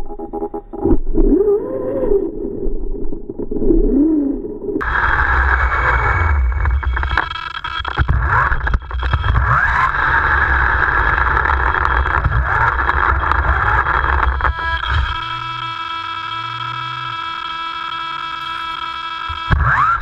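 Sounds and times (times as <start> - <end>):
low rumble over rough ground: 0.8 - 15.2
electric motor whine: 4.8 - 20.0.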